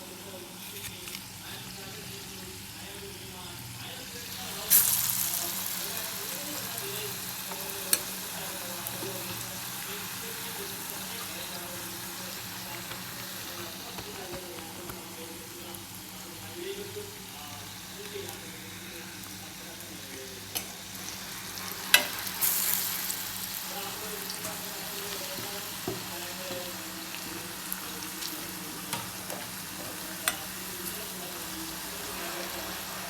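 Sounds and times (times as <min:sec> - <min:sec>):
fritters sizzling in hot oil: 0:00.0 - 0:33.0.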